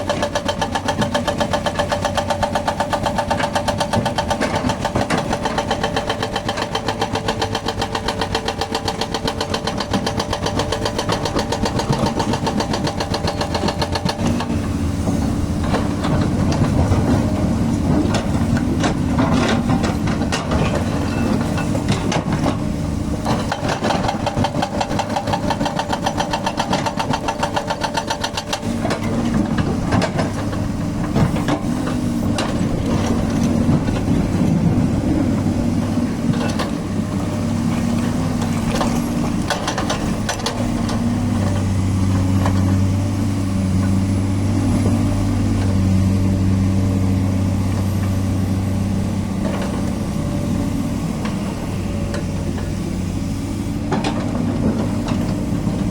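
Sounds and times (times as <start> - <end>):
hydraulic breaker hammer pounding: 0.0 - 42.8
excavator diesel engine hum: 0.0 - 55.9
scattered knocks and clunks: 0.1 - 34.7, 36.2 - 42.8, 53.9 - 55.9.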